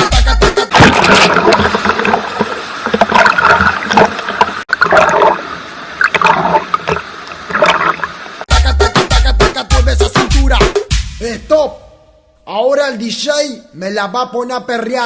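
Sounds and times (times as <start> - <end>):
heavy dance beat: 0.0 - 0.7, 8.5 - 11.5
water splashing and gurgling: 0.7 - 8.5.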